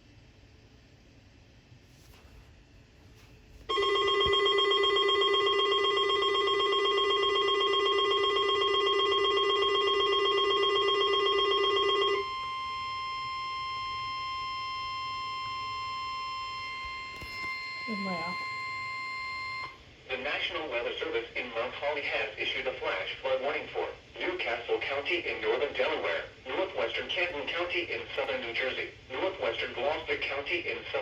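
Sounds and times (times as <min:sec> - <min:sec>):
harsh steady alarm: 0:03.7 - 0:19.8
weather radio alarm tone: 0:03.7 - 0:19.8.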